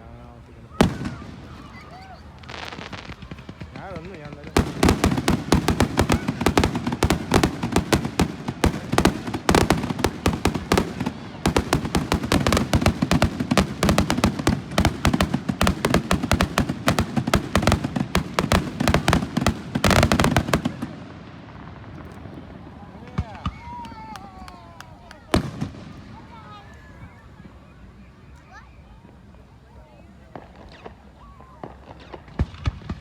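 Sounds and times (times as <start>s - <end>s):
fireworks cracking and popping: 0.0s - 27.8s, 30.2s - 33.0s.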